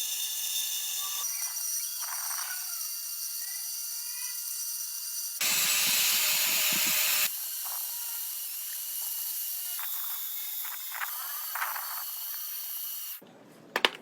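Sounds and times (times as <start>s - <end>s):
hissing spray from nozzle: 5.4s - 7.3s.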